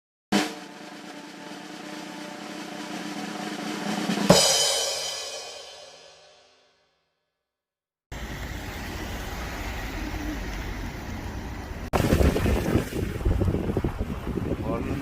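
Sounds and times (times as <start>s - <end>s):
snare drum roll: 0.3s - 6.2s
cymbal crash: 0.4s - 6.4s.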